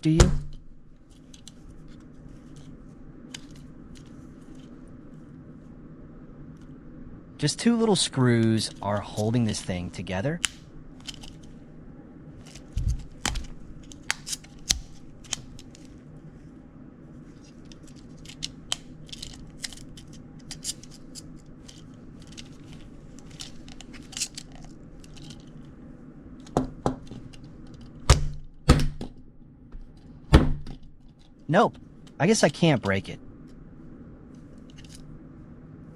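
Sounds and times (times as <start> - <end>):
heavier thumps: 30.3 - 30.8.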